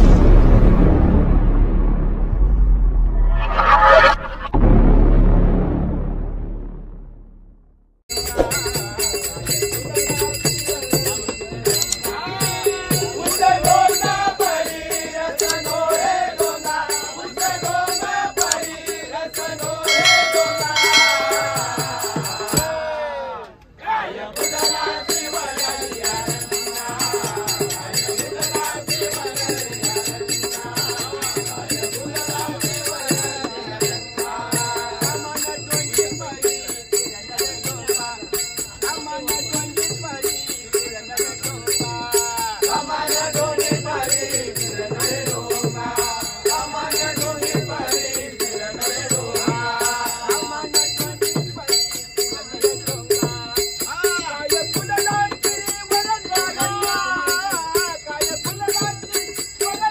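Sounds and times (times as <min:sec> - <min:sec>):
hand cymbals clashing: 0:08.1 - 0:22.8
person singing devotional song: 0:08.1 - 0:23.2, 0:24.3 - 0:59.9
low rhythmic strokes: 0:19.8 - 0:22.5.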